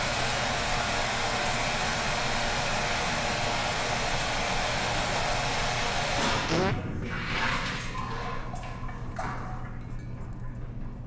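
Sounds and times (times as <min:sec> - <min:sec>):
electric hand dryer running: 0:00.0 - 0:06.5.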